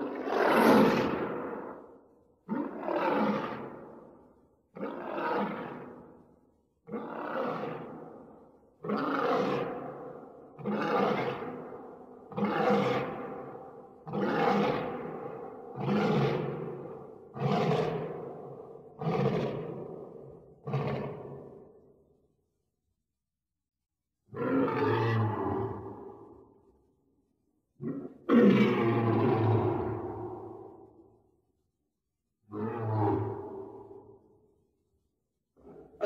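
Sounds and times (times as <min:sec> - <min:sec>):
lion roaring: 0:06.9 - 0:08.0, 0:14.0 - 0:21.6, 0:24.3 - 0:25.9.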